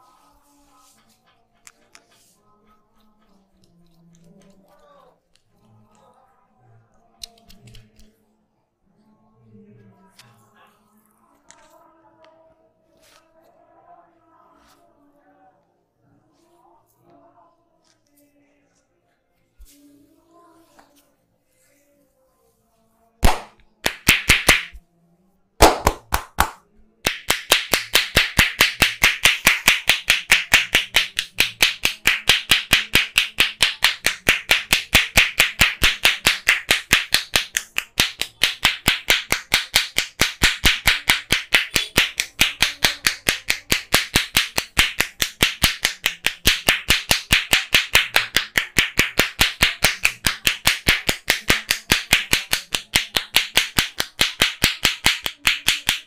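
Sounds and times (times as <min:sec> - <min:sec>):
hands slapping in massage: 0:23.2 - 0:24.8, 0:25.6 - 0:56.0.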